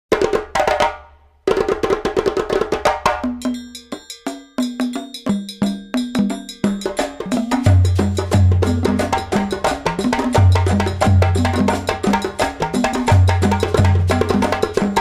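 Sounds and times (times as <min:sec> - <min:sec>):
wood block percussion clicks: 0:03.3 - 0:07.8.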